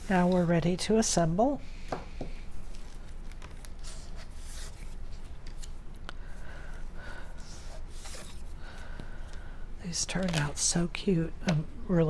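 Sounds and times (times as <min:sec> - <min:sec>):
paper rustling: 0:02.6 - 0:06.0.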